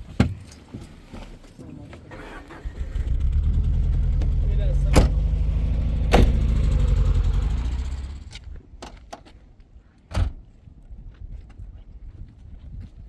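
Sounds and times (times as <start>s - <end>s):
car engine running: 2.7s - 8.4s
car door shutting: 4.1s - 6.9s.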